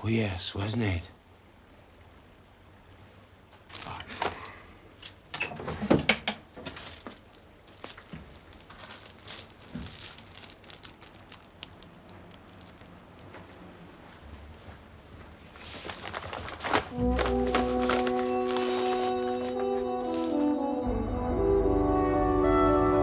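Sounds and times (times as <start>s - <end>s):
rustling and crinkling: 3.5s - 20.7s.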